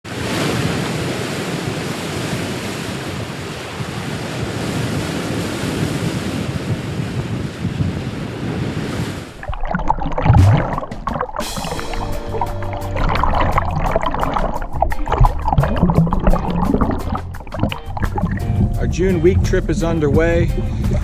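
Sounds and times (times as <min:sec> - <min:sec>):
wind: 0:00.0 - 0:09.6
ocean waves: 0:00.1 - 0:21.0.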